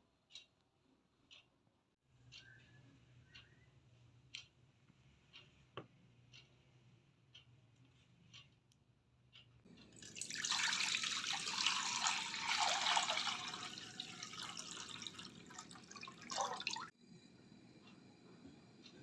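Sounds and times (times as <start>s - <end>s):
water running and splashing: 10.0s - 16.9s.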